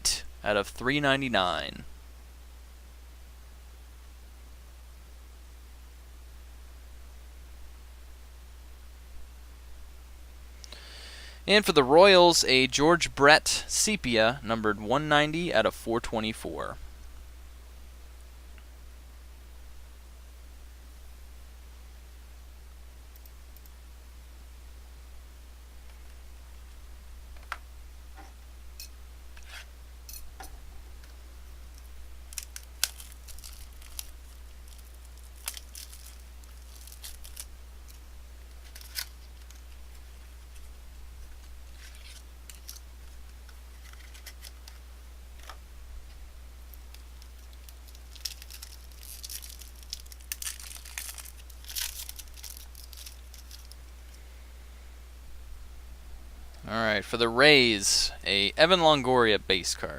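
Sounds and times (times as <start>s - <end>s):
steady low hum: 0.0s - 59.9s
packaging tearing rustles: 32.3s - 40.7s, 41.4s - 44.8s, 46.8s - 53.8s.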